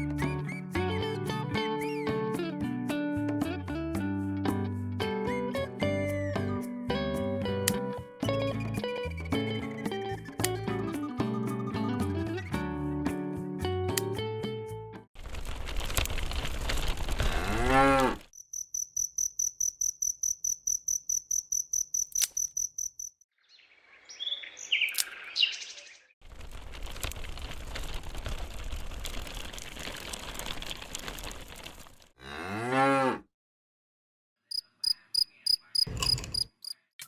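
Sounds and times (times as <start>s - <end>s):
cow mooing: 17.4s - 18.2s, 32.2s - 33.2s
insect chirping: 18.4s - 23.2s, 34.5s - 36.8s.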